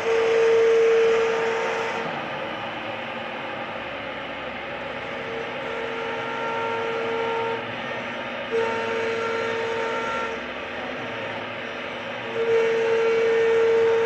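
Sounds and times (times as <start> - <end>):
high machine whine: 0.0 - 14.0
router machine noise: 3.5 - 14.0.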